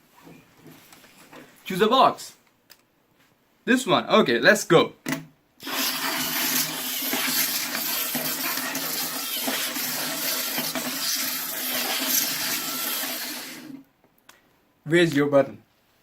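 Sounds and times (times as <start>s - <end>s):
small robot motors whirring: 5.6s - 13.8s.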